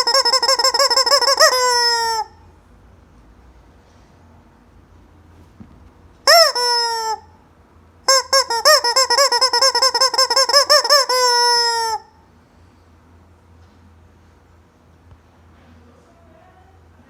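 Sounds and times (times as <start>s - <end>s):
rubber chicken toy squawking: 0.0s - 2.4s, 6.3s - 7.3s, 8.1s - 12.2s.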